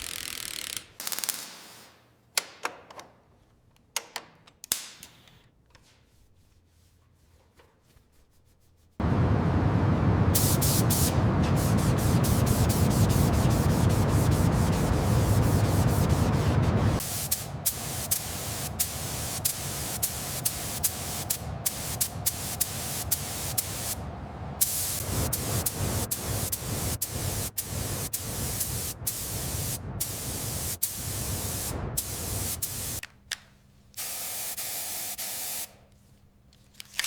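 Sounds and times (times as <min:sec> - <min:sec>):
hissing spray jet: 0:09.1 - 0:33.0, 0:34.0 - 0:35.7.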